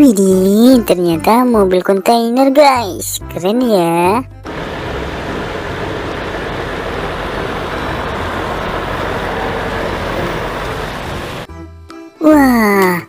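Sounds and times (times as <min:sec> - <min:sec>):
water spray rushing: 0:04.5 - 0:11.5.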